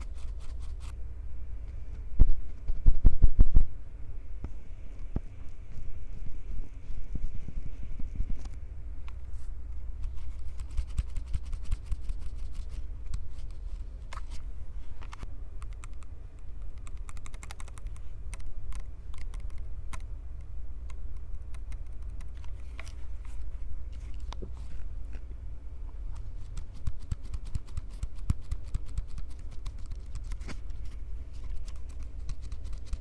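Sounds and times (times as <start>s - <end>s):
crisp clicks and crackles: 15.0s - 25.4s, 26.0s - 33.0s.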